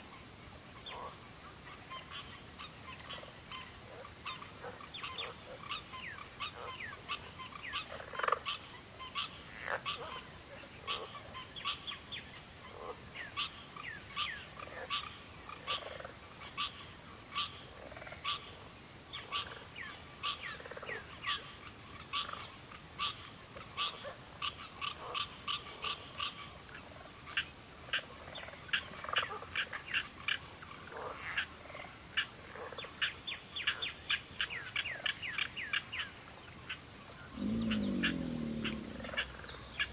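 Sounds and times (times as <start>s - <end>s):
cricket steady high trill: 33.0s - 39.9s.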